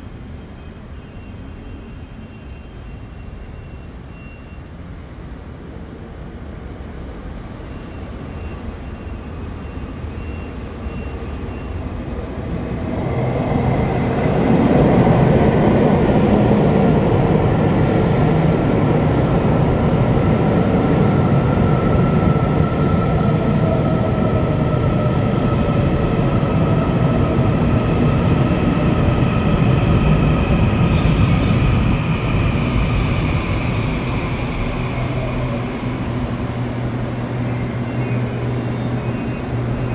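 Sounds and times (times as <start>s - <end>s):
train low hum: 0.0s - 39.9s
wheels and brakes squealing: 30.7s - 31.8s, 37.3s - 39.9s.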